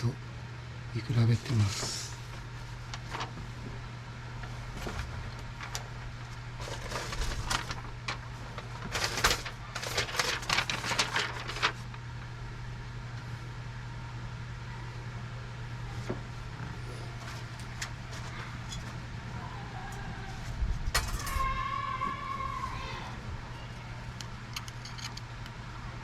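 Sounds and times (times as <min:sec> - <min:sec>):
tools and parts clinking: 0:20.9 - 0:21.4, 0:24.5 - 0:25.3.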